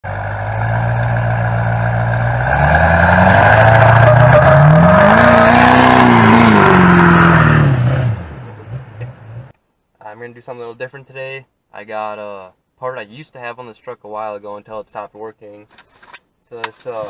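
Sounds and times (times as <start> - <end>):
diesel engine idling and revving: 0.0 - 9.5.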